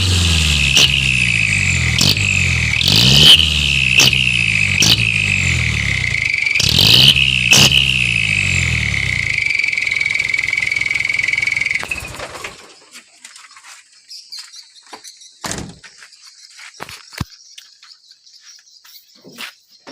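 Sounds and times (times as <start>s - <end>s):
throttle blips: 0.0s - 12.6s
truck engine with whistling exhaust: 0.0s - 12.8s
crickets chirping: 0.4s - 19.9s.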